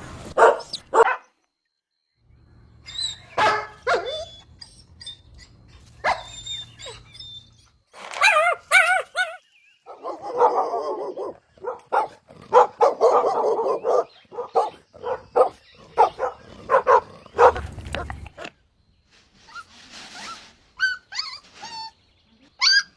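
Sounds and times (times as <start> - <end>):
puppy whining: 0.4 - 1.0, 2.8 - 9.4, 19.5 - 22.0, 22.6 - 22.9
puppies barking and yipping: 0.4 - 1.1, 2.8 - 18.5, 20.2 - 22.0, 22.6 - 22.9.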